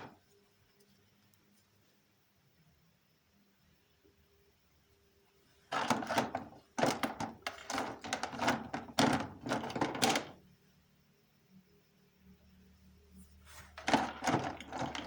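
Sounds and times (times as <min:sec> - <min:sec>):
objects and packaging clattering: 0:00.0 - 0:00.2, 0:05.7 - 0:10.4, 0:13.5 - 0:15.0.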